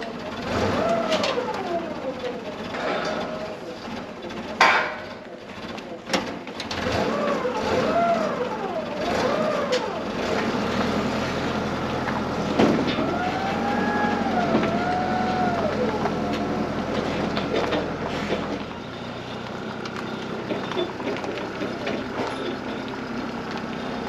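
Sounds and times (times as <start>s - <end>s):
engine revving: 0.0s - 4.1s, 6.6s - 24.0s.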